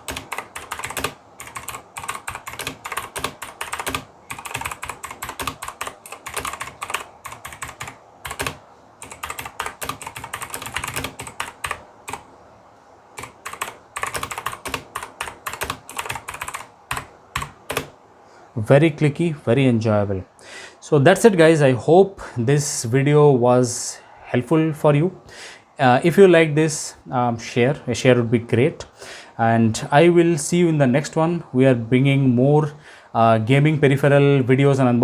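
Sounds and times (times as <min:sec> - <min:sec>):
mechanical keyboard typing: 0:00.0 - 0:12.2, 0:13.2 - 0:17.9.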